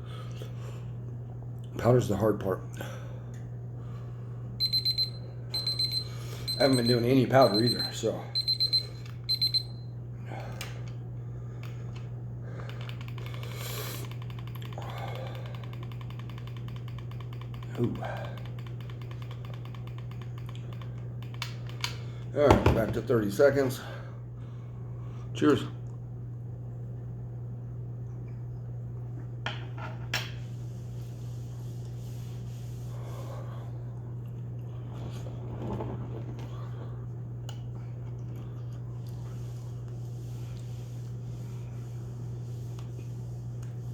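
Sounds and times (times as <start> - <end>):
low electrical hum: 0.0 - 43.9
soft rubbing and handling: 29.8 - 33.3, 39.0 - 43.9.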